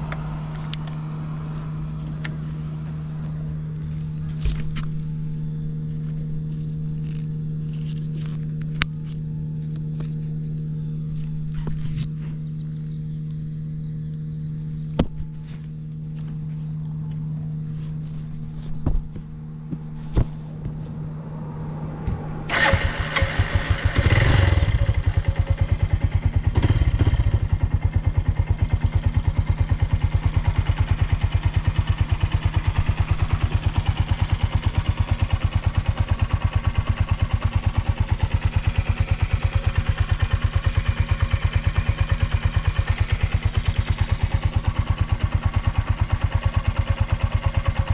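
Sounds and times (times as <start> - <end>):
motorcycle engine starting and idling: 0.0 - 13.1, 14.3 - 47.9
engine revving: 21.1 - 27.9.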